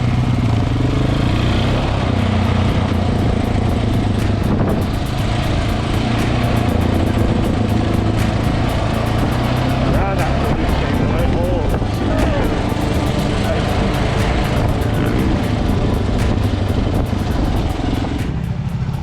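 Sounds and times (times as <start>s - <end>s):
motorcycle engine running: 0.0s - 19.0s.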